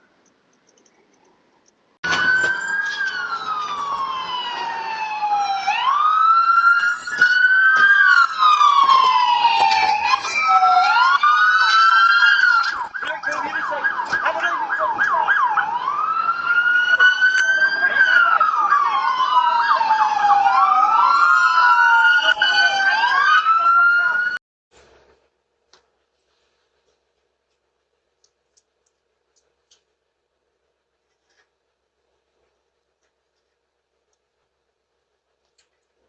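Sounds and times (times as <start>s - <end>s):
emergency vehicle siren wailing: 2.0s - 24.4s
siren rapid yelp: 2.0s - 24.4s.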